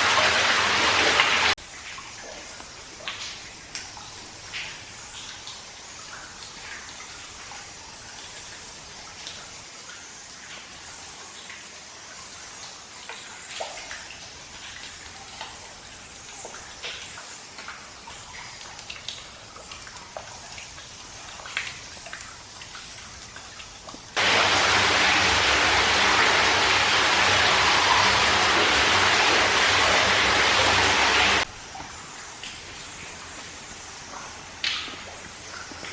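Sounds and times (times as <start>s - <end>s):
steady hiss of water: 0.0s - 35.9s.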